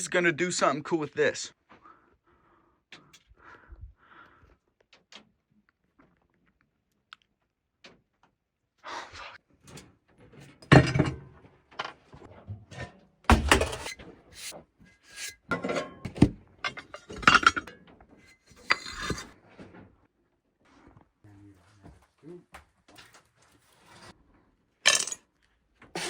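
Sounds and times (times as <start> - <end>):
hard objects clinking and knocking: 13.3 - 19.3.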